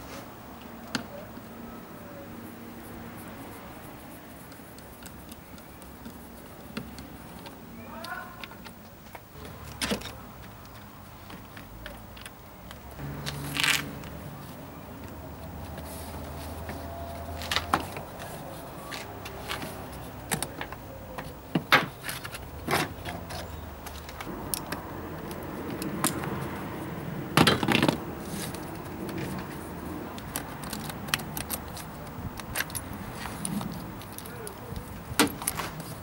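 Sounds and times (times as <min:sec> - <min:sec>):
tools and parts clicking and rattling: 0:19.3 - 0:26.5, 0:27.3 - 0:36.0.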